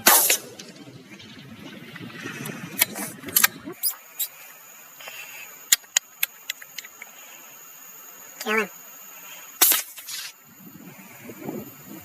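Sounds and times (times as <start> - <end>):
low rumble: 0.0 - 3.8
high-pitched whine: 0.0 - 12.0.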